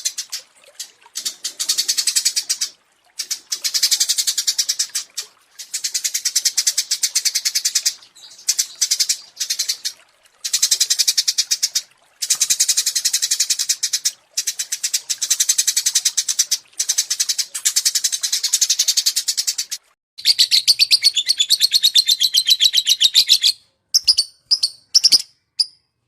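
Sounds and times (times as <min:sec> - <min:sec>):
songbird trilling: 0:20.2 - 0:25.8.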